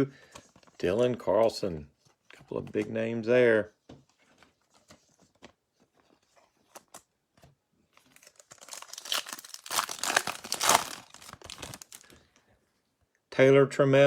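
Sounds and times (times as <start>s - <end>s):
foil wrapper tearing and crinkling: 8.1s - 12.1s.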